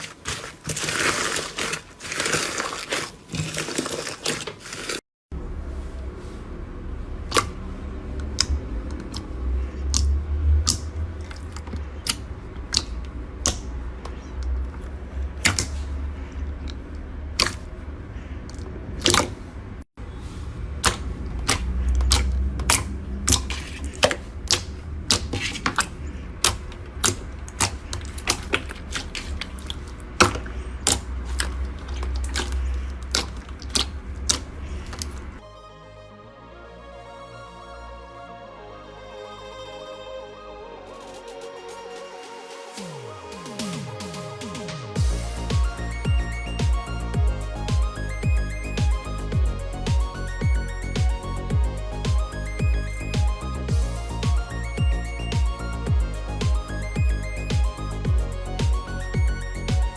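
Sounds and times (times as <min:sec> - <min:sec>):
low handling rumble: 0:05.3 - 0:35.4
slime clicking and popping: 0:07.3 - 0:07.6, 0:09.9 - 0:14.6, 0:15.4 - 0:15.8, 0:16.6 - 0:17.7, 0:18.5 - 0:19.4, 0:20.8 - 0:35.3.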